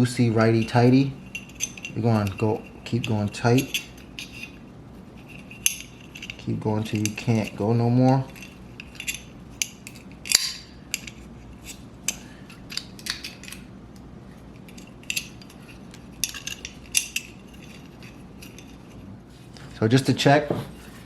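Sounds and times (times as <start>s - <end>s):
small metal parts clicking: 5.3s - 13.7s, 14.6s - 18.9s.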